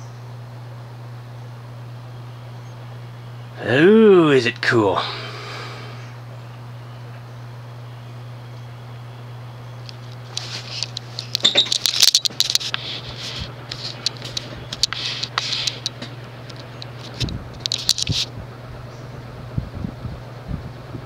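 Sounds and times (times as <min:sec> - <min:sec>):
ceiling fan motor humming: 0:00.0 - 0:21.0
scratchy rustling and clicks: 0:09.9 - 0:18.3.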